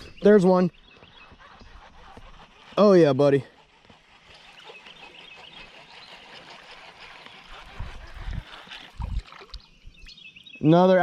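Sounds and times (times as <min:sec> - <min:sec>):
water trickling and splashing: 0:01.9 - 0:10.2.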